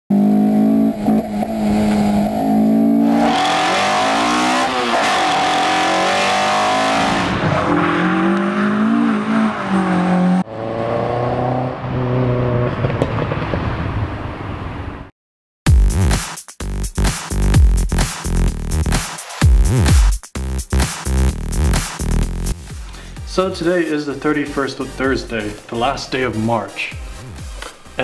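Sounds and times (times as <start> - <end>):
car engine revving: 0.1 - 13.4.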